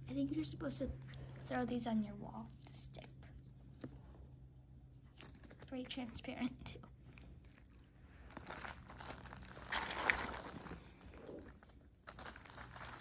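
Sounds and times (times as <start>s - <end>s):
plastic packaging crinkling: 8.2s - 13.0s.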